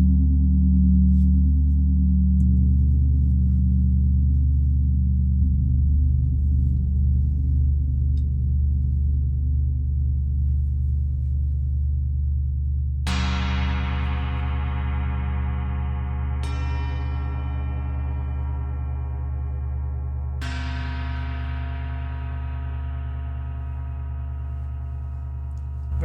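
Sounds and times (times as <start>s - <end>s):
gong ringing hum: 13.1s - 26.0s.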